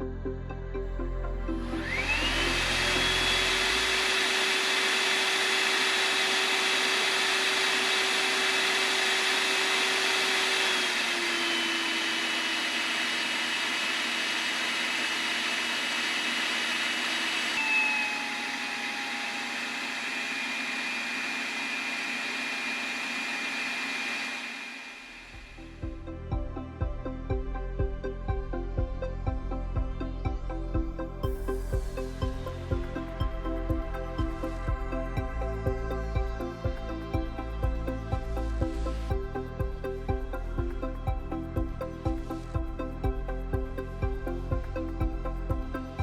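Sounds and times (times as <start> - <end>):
hand dryer blowing: 1.8 - 25.5.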